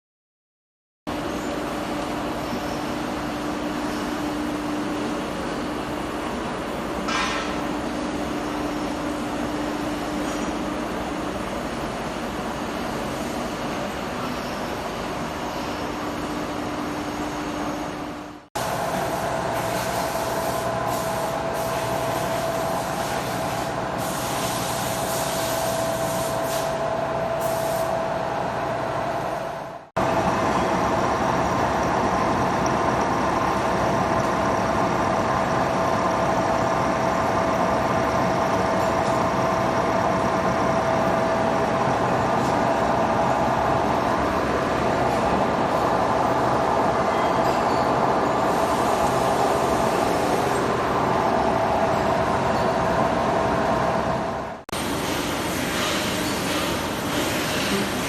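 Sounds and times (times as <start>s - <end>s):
boring machine running with whine: 26.9s - 58.0s.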